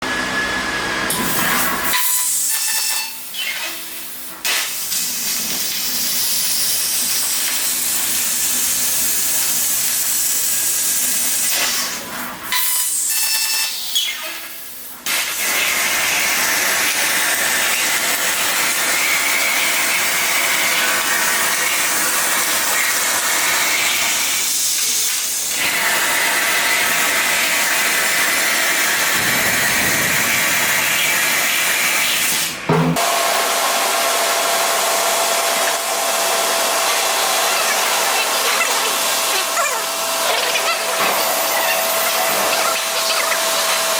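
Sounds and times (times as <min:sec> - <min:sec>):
laser cutter hissing through steel: 0:01.1 - 0:43.9.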